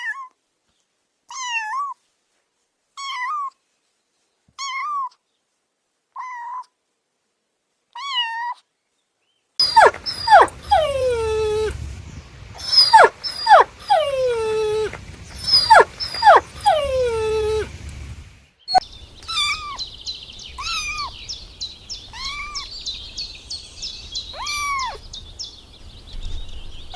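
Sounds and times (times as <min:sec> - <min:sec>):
puppy whimpering: 0:09.6 - 0:11.9, 0:12.6 - 0:18.2
puppy yelping: 0:09.6 - 0:12.0, 0:12.6 - 0:18.2
puppy whining: 0:09.6 - 0:18.2.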